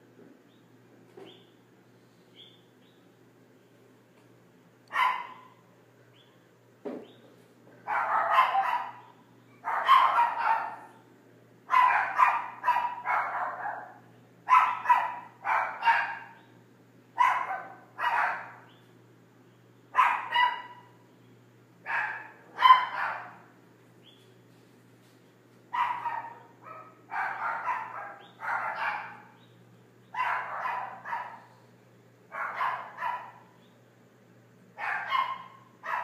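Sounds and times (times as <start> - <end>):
dog barking: 4.9 - 5.6, 7.8 - 11.0, 11.7 - 16.4, 17.2 - 18.7, 19.9 - 21.0, 21.8 - 23.5, 25.7 - 29.4, 30.1 - 31.6, 32.3 - 33.6, 34.8 - 36.0.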